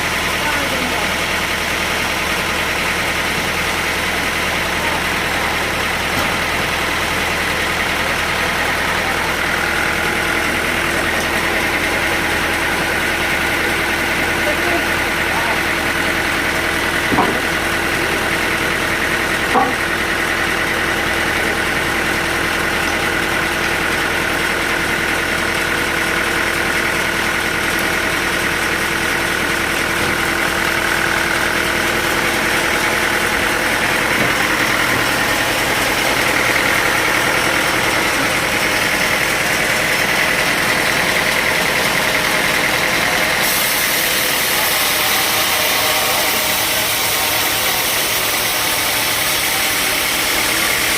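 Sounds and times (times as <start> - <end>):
sawmill machinery humming: 0.0 - 50.9
sharp knocks: 17.1 - 17.6, 19.5 - 19.9, 34.1 - 35.2.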